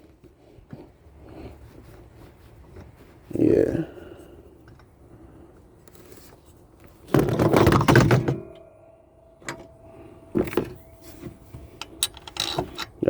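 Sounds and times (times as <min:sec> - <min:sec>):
metal tools clattering: 0:07.2 - 0:08.7, 0:09.4 - 0:13.0.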